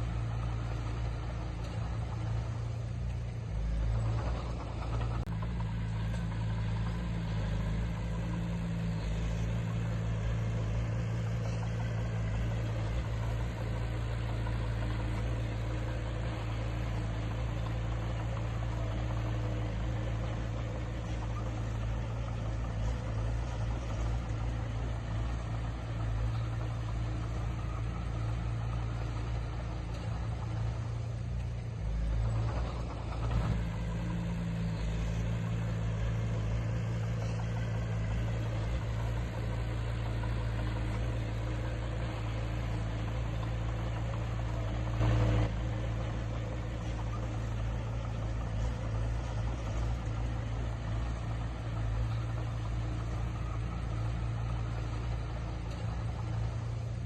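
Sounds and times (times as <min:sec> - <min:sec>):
diesel engine of heavy machinery: 0:00.0 - 0:57.0.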